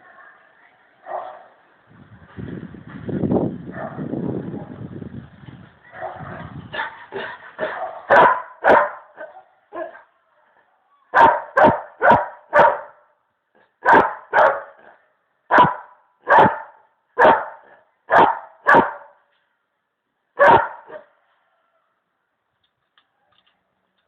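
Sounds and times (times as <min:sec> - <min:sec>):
dog barking loudly: 0:05.9 - 0:10.0, 0:11.1 - 0:13.0, 0:13.8 - 0:19.2, 0:20.4 - 0:21.1.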